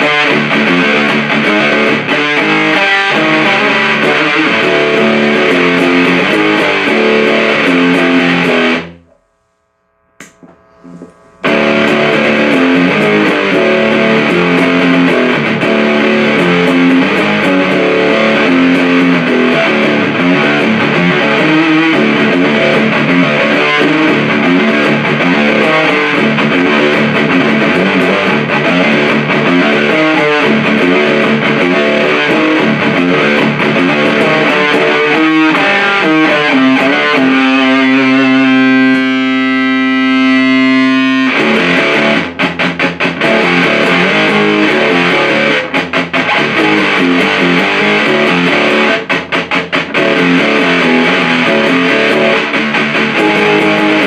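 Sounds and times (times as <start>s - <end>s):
fuzzed electric guitar riffs: 0.0s - 54.0s.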